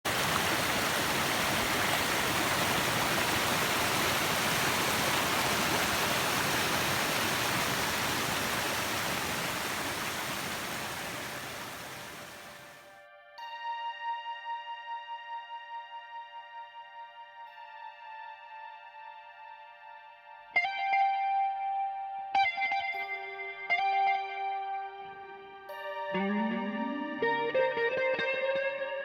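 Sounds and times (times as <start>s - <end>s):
flowing water rushing: 0.0s - 12.8s.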